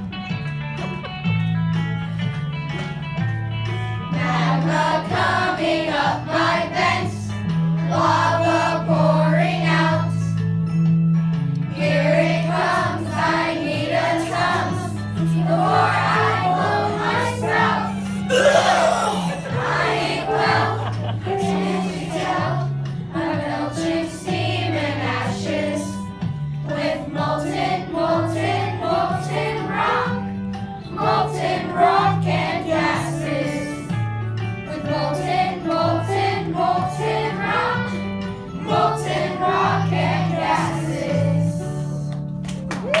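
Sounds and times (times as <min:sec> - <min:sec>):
choir singing: 0:04.2 - 0:07.1, 0:07.9 - 0:10.1, 0:11.8 - 0:26.0, 0:26.7 - 0:30.2, 0:30.9 - 0:33.7, 0:34.7 - 0:38.0, 0:38.6 - 0:41.8.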